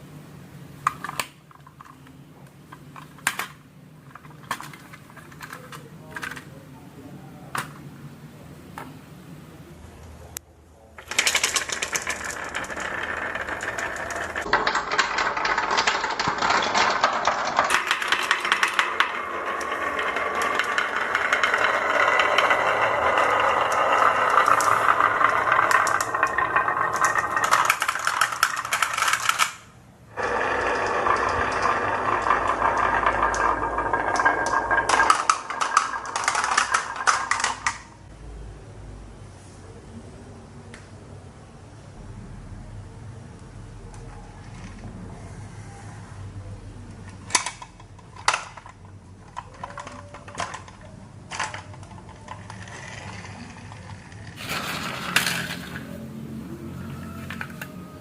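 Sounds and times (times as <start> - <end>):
marbles rattling down a track: 11.0 - 38.0, 47.3 - 58.0.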